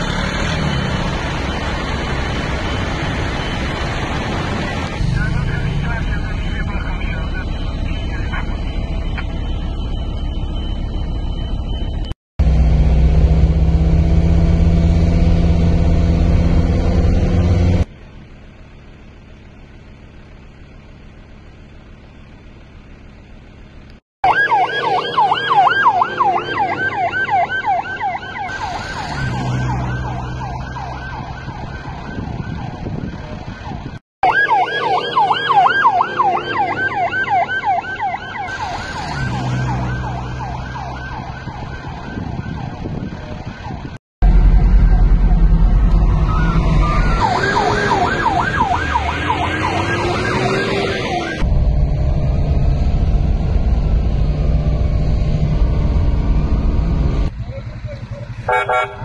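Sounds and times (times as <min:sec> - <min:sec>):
emergency siren yelping: 0:00.0 - 0:12.2, 0:24.2 - 0:51.5, 0:58.2 - 0:59.0
heavy low vehicle rumble: 0:00.0 - 0:59.0.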